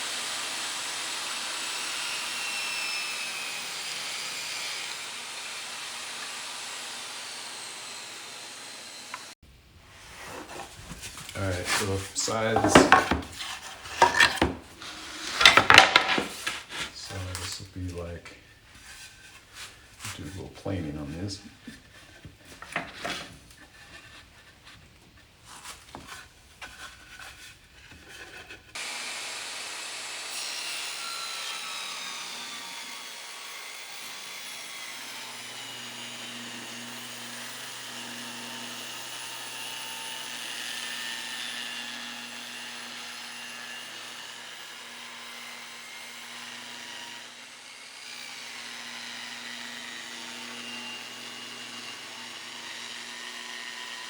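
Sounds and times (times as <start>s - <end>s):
hand plane rasping on wood: 10.2s - 17.5s.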